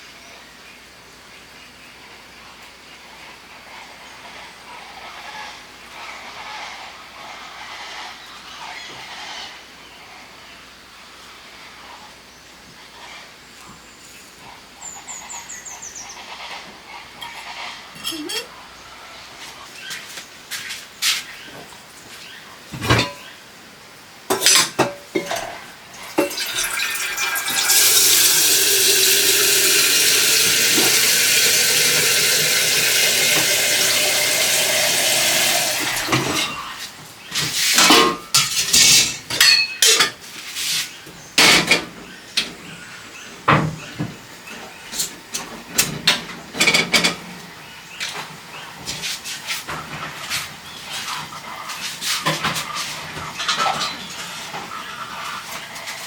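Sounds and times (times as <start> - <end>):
dishes and cutlery clinking: 18.0 - 18.5, 22.8 - 23.3, 24.3 - 36.6, 37.8 - 40.2
water running from tap: 26.0 - 36.5.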